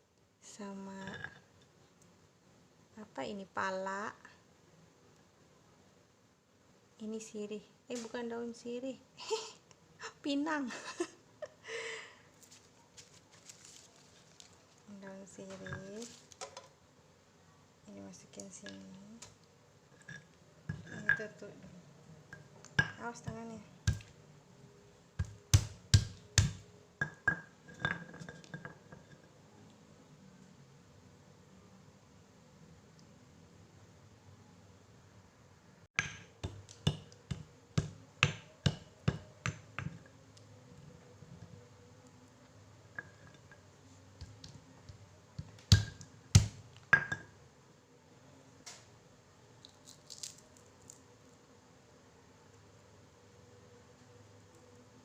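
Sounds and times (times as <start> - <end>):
pestle pounding in mortar: 22.8 - 24.1, 25.2 - 26.6, 36.0 - 40.0, 45.4 - 46.6.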